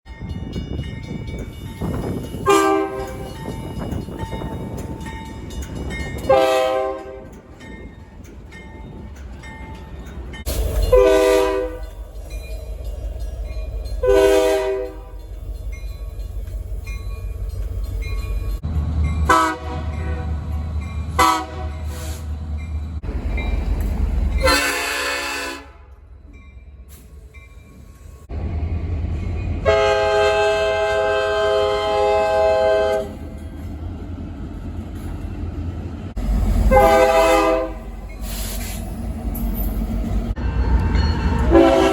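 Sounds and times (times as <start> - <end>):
low rumble of passing trains: 0.0 - 41.9
train horn blasts: 2.4 - 3.4, 6.2 - 7.4, 10.8 - 11.9, 14.0 - 15.2, 19.2 - 20.4, 21.2 - 22.3, 24.4 - 26.0, 29.6 - 33.2, 36.7 - 37.9, 41.4 - 41.9.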